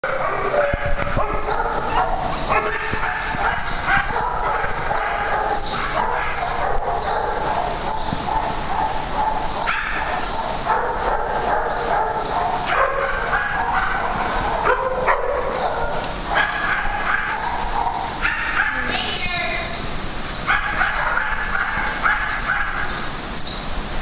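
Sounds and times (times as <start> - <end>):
dogs barking and whining: 0.0 - 19.2, 20.4 - 23.0.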